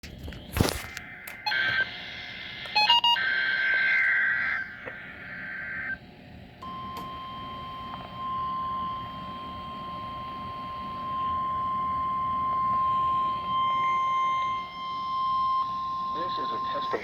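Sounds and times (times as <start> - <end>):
receiver hiss: 0.3 - 6.1, 15.6 - 17.0
warbling data screech: 1.1 - 6.0, 13.8 - 17.0
steady warning alarm tone: 1.2 - 17.0.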